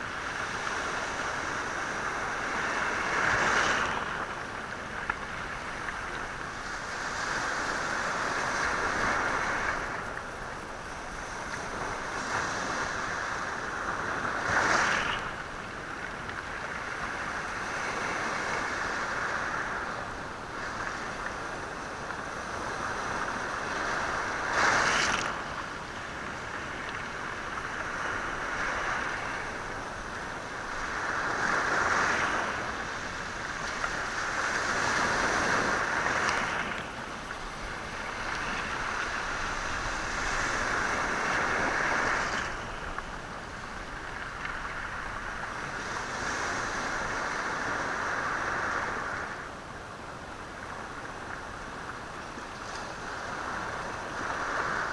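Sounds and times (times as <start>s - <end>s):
sea waves on rocky shore: 0.0s - 54.9s.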